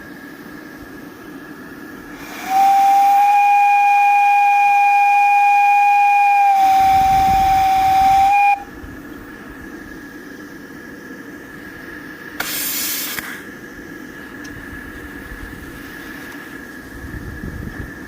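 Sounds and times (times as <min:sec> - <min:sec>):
steam hiss: 0:00.0 - 0:18.0
steam whistle blast: 0:02.1 - 0:08.7.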